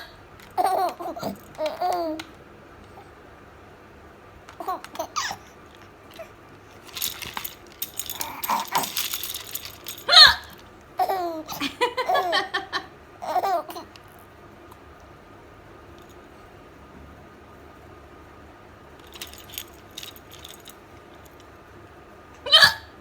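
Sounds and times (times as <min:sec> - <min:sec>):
child babbling: 0:00.6 - 0:02.2
young child laughing: 0:04.6 - 0:05.4, 0:10.1 - 0:14.0.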